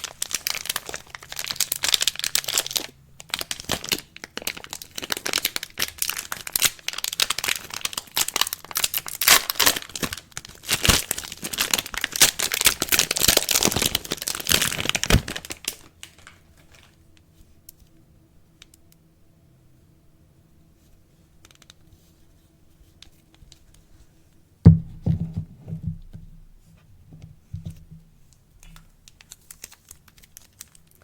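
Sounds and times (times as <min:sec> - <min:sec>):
wrapping crinkling and tearing: 0:00.0 - 0:17.0, 0:28.6 - 0:31.0.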